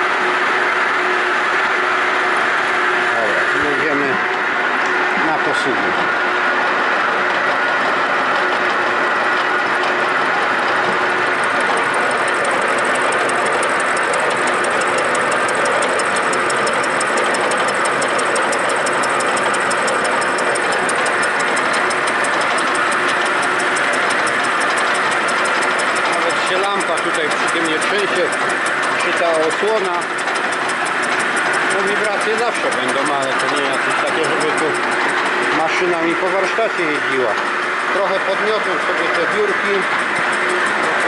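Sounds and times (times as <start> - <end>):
milling machine cutting metal: 0.0 - 41.0
motor running steadily: 0.0 - 41.0
fast even ticking: 9.4 - 41.0.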